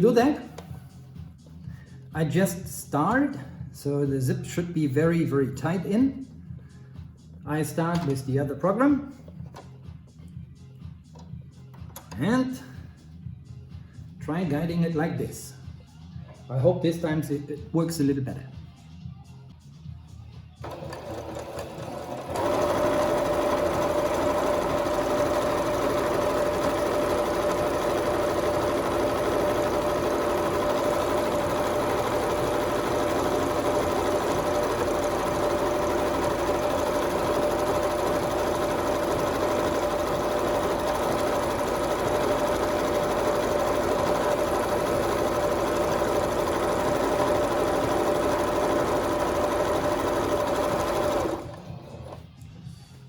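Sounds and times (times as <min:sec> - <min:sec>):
electric sewing machine running: 0:20.6 - 0:52.2.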